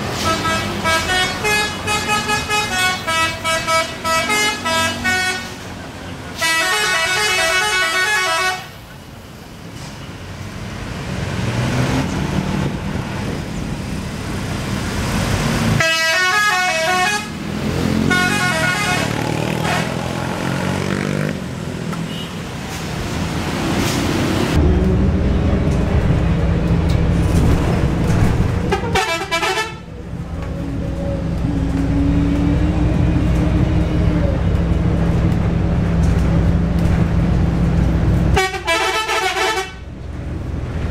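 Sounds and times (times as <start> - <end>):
bus engines and tyre noise: 0.0 - 40.9
bus musical horn melody: 0.2 - 5.6, 6.4 - 8.8, 15.8 - 17.4, 18.0 - 20.0, 28.6 - 29.9, 38.3 - 39.9.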